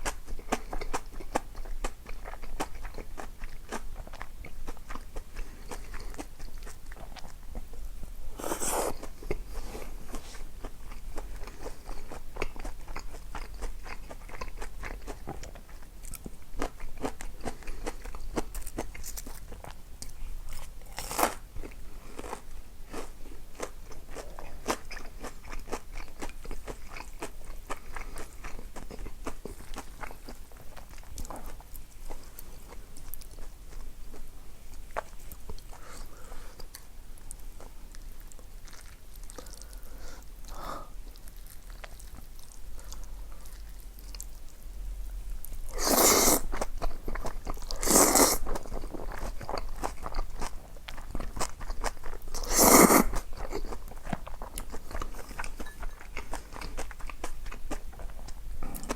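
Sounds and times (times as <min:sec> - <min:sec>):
chewing with crunches: 0:00.0 - 0:44.6, 0:45.3 - 0:58.9
slurping: 0:45.7 - 0:46.6, 0:47.7 - 0:48.6, 0:52.4 - 0:53.2.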